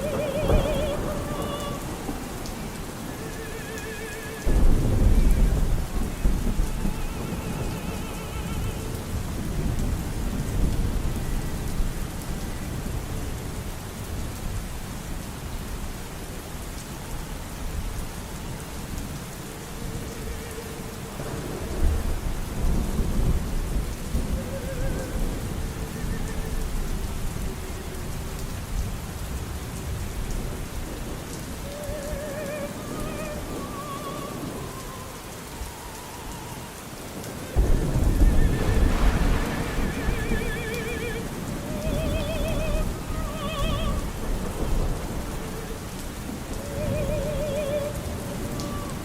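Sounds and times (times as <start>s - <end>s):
muffled operatic singing: 0.0s - 10.0s, 19.3s - 29.2s, 31.3s - 49.0s
steady rain: 0.0s - 49.0s
thunder rumbling: 0.0s - 49.0s.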